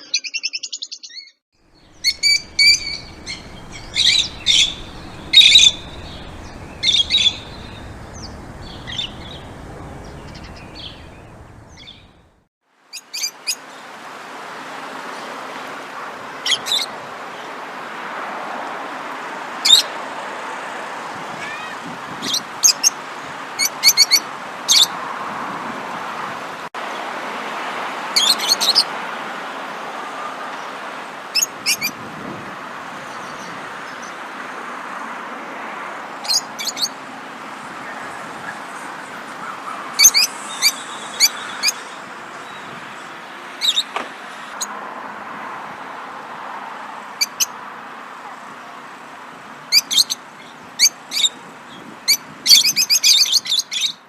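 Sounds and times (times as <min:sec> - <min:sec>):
songbirds chirping: 0:00.1 - 0:12.4
steady rushing noise: 0:01.8 - 0:12.4.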